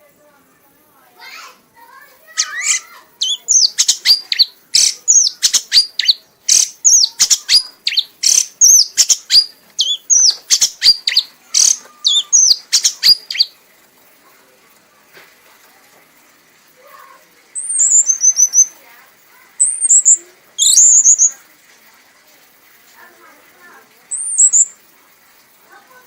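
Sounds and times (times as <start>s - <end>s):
songbird singing clicks and whistles: 2.4s - 13.6s, 17.5s - 18.8s, 19.6s - 21.4s, 24.1s - 24.8s.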